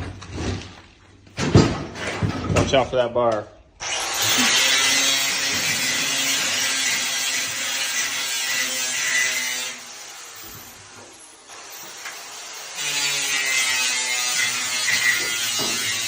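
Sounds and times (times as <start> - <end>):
power tool whirring: 3.8 - 16.0.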